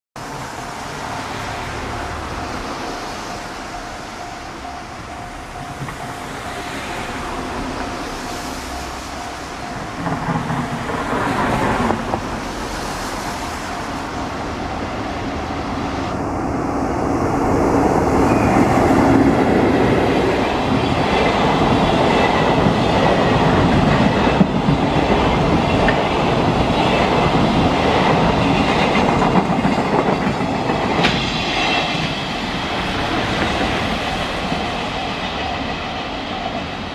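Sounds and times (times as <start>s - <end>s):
steady warning tone: 0.2s - 16.5s, 17.6s - 36.9s
freight train rolling past: 0.2s - 36.9s
wheels clicking over rail joints: 21.1s - 36.2s.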